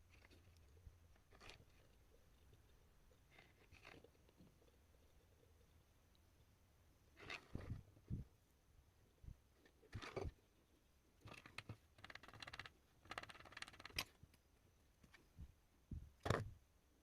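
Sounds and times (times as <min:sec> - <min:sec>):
small objects scraping and clicking: 0:00.0 - 0:04.6, 0:07.2 - 0:07.9, 0:09.6 - 0:10.4, 0:11.2 - 0:14.2.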